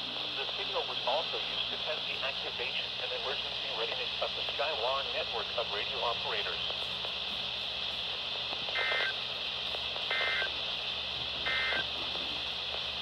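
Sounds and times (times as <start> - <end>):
steady radio hiss: 0.0 - 13.0
two-tone modem screech: 8.8 - 9.2, 10.1 - 10.5, 11.5 - 11.9.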